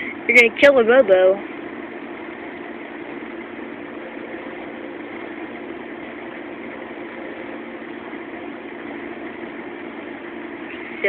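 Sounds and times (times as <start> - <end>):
steady mechanical hum: 0.0 - 11.0.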